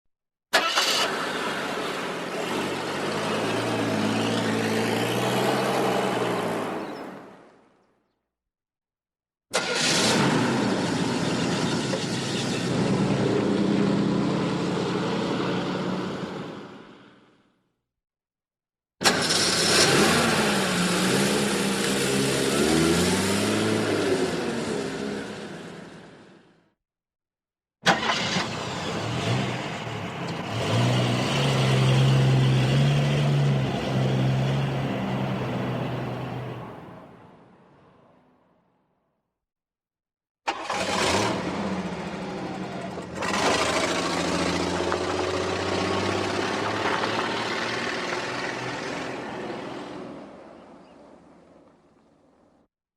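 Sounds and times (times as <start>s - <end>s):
car engine starting and cranking: 0.5s - 7.0s, 9.5s - 13.6s, 19.0s - 25.5s, 27.8s - 36.6s, 40.5s - 49.8s
car engine revving: 0.6s - 7.0s, 19.0s - 26.2s, 27.9s - 36.7s, 40.5s - 50.4s.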